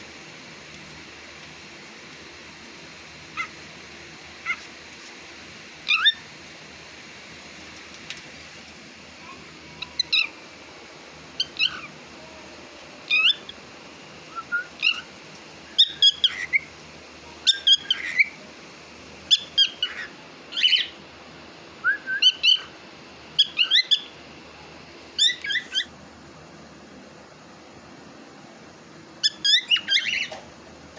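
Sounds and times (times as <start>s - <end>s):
cockatiel chirping and whistling: 4.4s - 4.6s, 5.9s - 6.2s, 11.4s - 11.9s, 13.1s - 13.5s, 14.3s - 15.1s, 15.8s - 16.7s, 17.5s - 18.3s, 19.3s - 21.0s, 22.0s - 22.7s, 23.4s - 24.1s, 25.2s - 25.9s, 29.2s - 30.4s.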